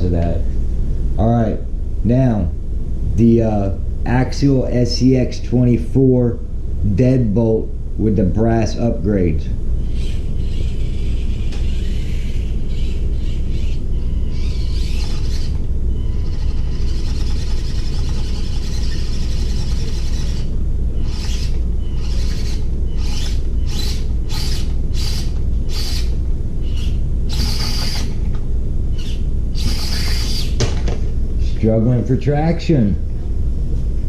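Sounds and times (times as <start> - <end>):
small electric motor whining: 9.8 - 30.6.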